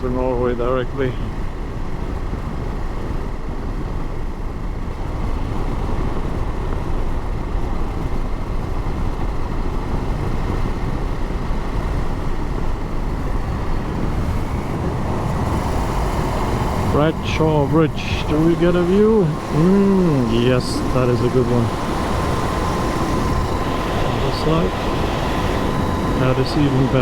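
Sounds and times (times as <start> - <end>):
wind noise: 0.0 - 27.0
motorcycle engine: 11.0 - 27.0.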